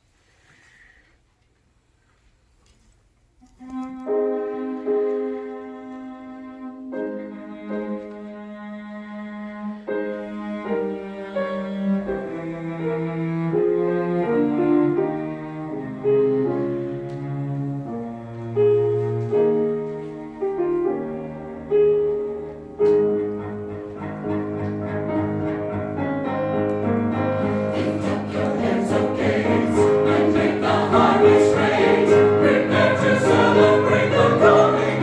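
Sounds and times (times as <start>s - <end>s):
piano music: 4.1s - 8.9s, 9.8s - 35.0s
loud piano chords: 9.9s - 35.0s.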